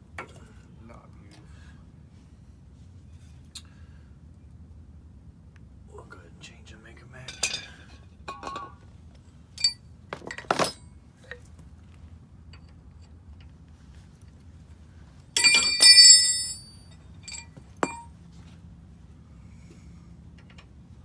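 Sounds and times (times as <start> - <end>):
ringing metal clatter: 9.6 - 10.8, 15.4 - 18.1
metal hand tools clinking: 15.4 - 18.1.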